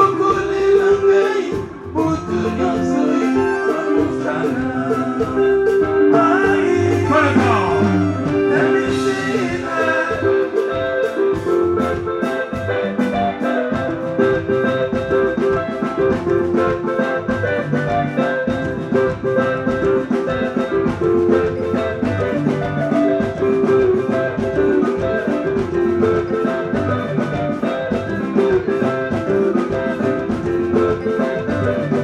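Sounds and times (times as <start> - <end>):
fast drum beat: 0.0 - 32.0
live band music: 0.0 - 32.0
ringing lead lines: 0.0 - 32.0.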